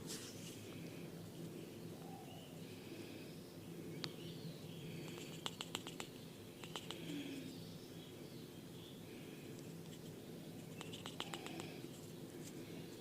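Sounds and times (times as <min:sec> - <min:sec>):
sharp clicks: 0:05.0 - 0:07.1, 0:10.8 - 0:11.7.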